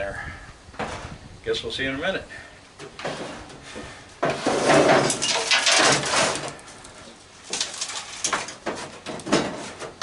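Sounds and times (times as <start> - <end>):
metal parts clattering and scraping: 4.2 - 10.0.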